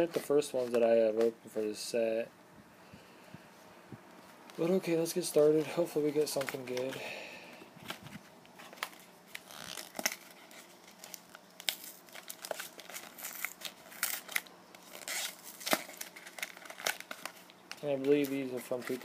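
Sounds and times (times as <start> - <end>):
foil wrapper crinkling and tearing: 8.6 - 19.0.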